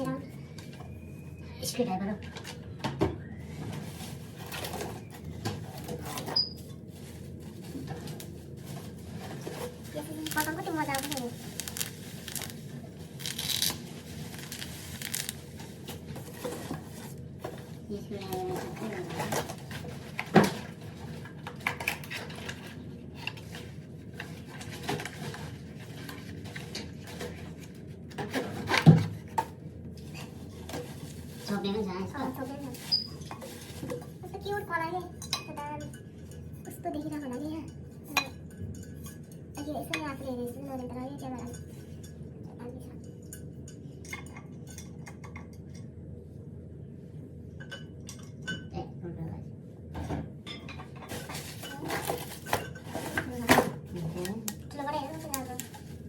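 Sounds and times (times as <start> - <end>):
kitchenware clinking: 35.1 - 40.2, 47.6 - 48.8, 50.4 - 53.7.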